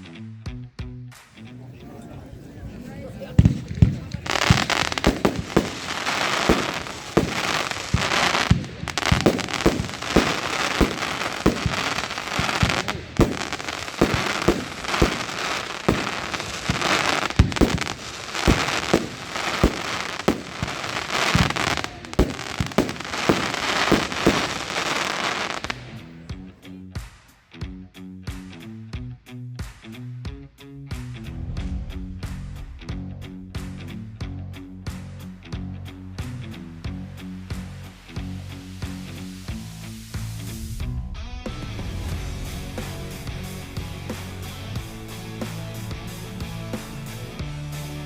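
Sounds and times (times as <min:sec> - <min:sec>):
crackle of bursting stars: 0:03.4 - 0:26.0
firework launch thumps: 0:03.4 - 0:26.4.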